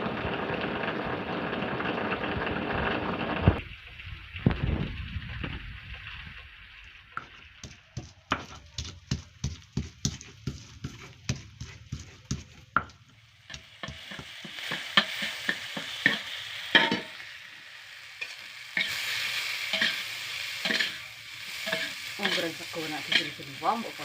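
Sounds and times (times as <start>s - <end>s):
crackling hiss: 13.5s - 24.0s.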